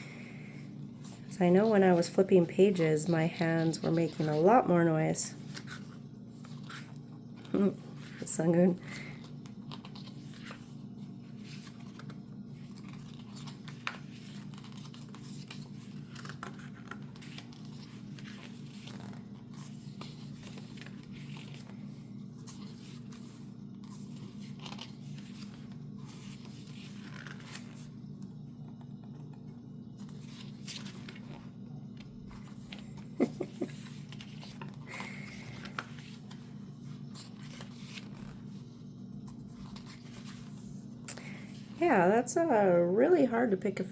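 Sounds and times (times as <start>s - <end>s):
paper pages rustling: 0.0s - 41.8s
steady low hum: 0.0s - 43.9s.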